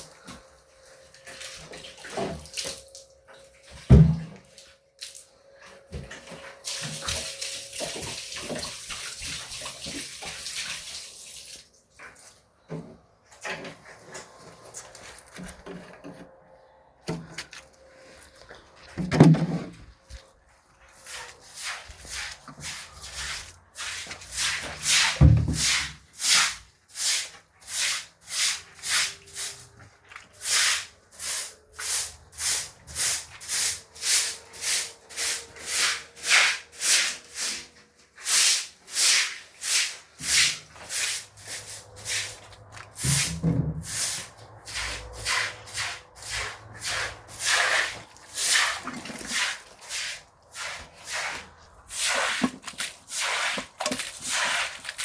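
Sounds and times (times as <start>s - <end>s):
water pouring and splashing: 1.2s - 5.3s, 6.2s - 12.4s, 21.0s - 37.6s, 38.2s - 55.0s
wet cloth scrubbing a surface: 20.8s - 55.0s.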